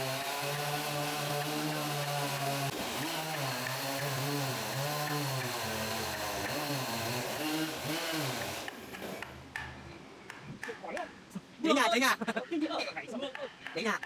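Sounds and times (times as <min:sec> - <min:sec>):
chainsaw engine running: 0:00.0 - 0:09.3.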